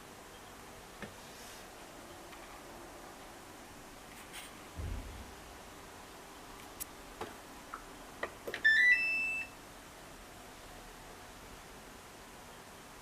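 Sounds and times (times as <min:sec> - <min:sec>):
dull thump: 0:04.8 - 0:05.4
washing machine beeps rising: 0:08.6 - 0:09.6.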